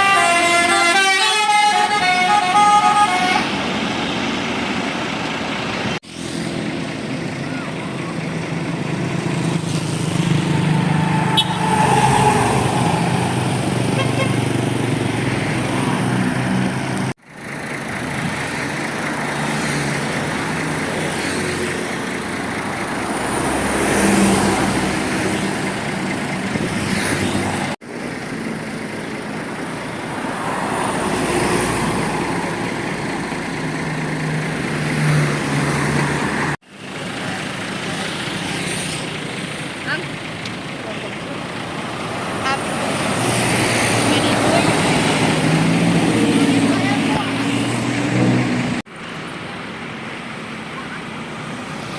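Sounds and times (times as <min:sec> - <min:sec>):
road traffic passing: 0:00.0 - 0:51.9.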